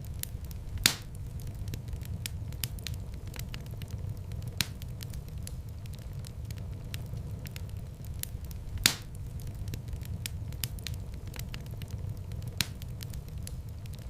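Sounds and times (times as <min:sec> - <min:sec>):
fire crackling: 0:00.0 - 0:14.0
wood fire rumbling: 0:00.0 - 0:14.0
loud pop from fire: 0:00.2 - 0:03.5, 0:08.2 - 0:11.5.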